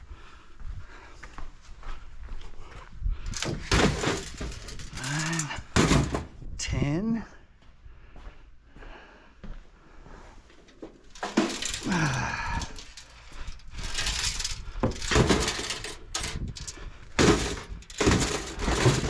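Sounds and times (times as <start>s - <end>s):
metal cases clattering and knocking: 3.3s - 6.4s, 10.7s - 19.0s.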